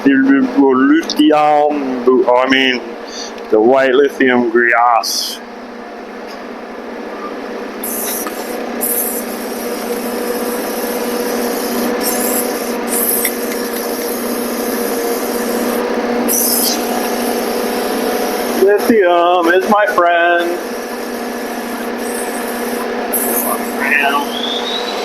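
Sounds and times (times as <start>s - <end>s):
steady hum: 0.0s - 25.0s
aerosol can spraying: 7.8s - 18.6s, 20.6s - 23.8s.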